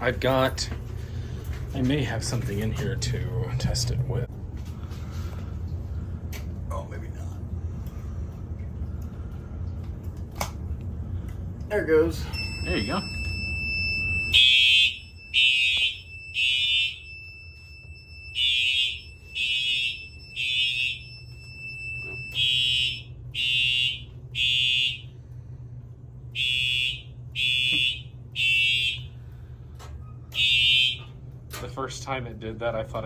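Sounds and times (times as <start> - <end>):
steady high alarm tone: 12.1 - 25.2, 26.3 - 29.2, 30.3 - 31.1
fire alarm horn blasts: 12.2 - 25.3, 26.3 - 29.3, 30.3 - 31.3.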